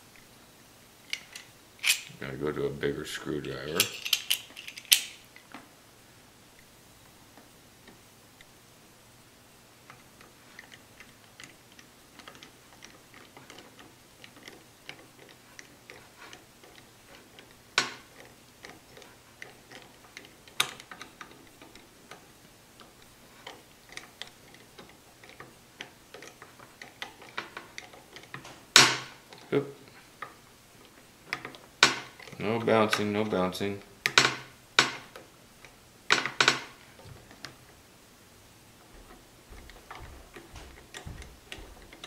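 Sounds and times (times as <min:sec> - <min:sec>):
screwdriver clicking and scraping: 0:01.1 - 0:02.2, 0:03.7 - 0:05.2.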